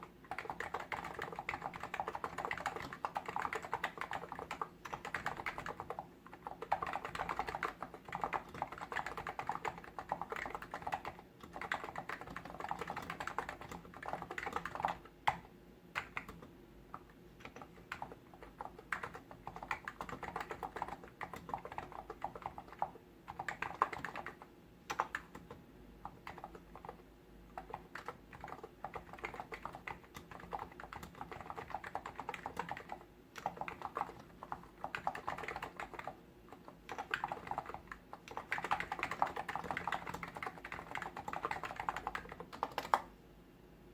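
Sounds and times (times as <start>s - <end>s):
keyboard typing: 0.0s - 43.1s.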